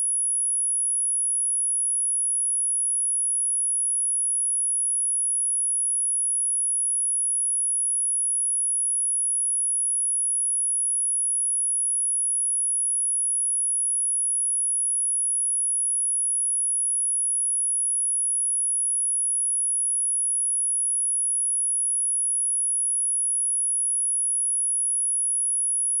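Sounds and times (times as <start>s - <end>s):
high-pitched sine test tone: 8.8s - 26.0s.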